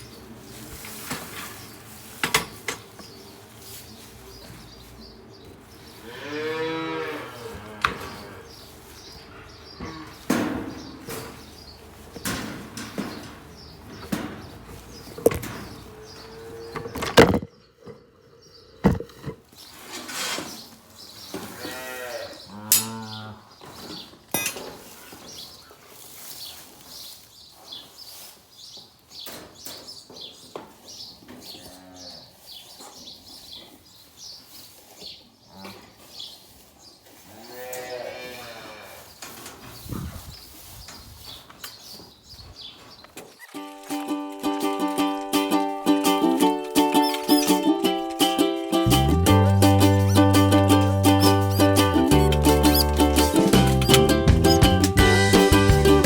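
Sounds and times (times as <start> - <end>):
calves mooing: 6.0 - 8.7, 9.3 - 10.4, 15.6 - 16.9, 21.4 - 23.5, 31.4 - 32.3, 37.3 - 39.0, 49.2 - 55.4
sharp knocks and clicks: 51.2 - 55.1.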